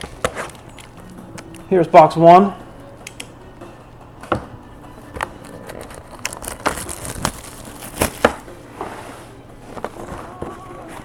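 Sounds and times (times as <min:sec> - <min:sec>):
plastic wrapping tearing and crinkling: 0:05.4 - 0:08.5.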